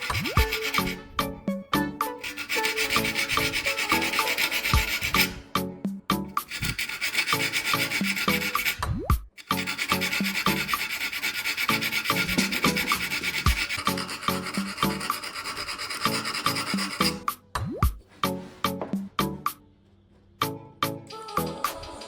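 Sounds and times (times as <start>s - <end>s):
file rasping against metal: 0.0s - 5.6s, 6.3s - 17.3s
background music with steady beat: 0.1s - 6.6s, 17.2s - 22.0s.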